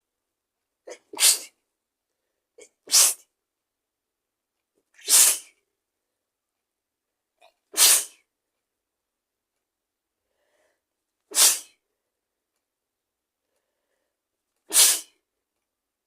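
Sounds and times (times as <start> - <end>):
person sneezing: 0.9 - 1.6, 2.6 - 3.3, 5.0 - 5.6, 7.7 - 8.2, 11.3 - 11.8, 14.7 - 15.2
catch of breath: 10.3 - 10.8.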